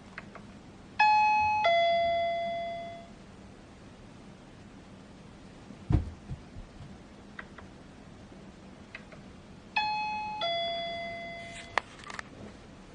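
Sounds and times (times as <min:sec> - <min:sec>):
two-tone door chime: 0:01.0 - 0:03.1, 0:09.8 - 0:11.8
dull thump: 0:05.9 - 0:07.0.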